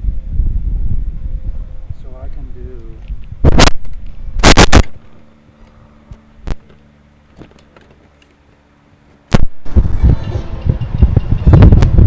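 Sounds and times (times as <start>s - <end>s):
low electrical hum: 0.0s - 12.0s
sharp click: 3.5s - 5.0s.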